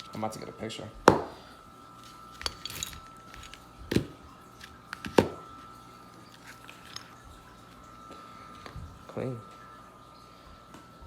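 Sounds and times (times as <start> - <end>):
crinkly rustle: 5.6 - 7.8.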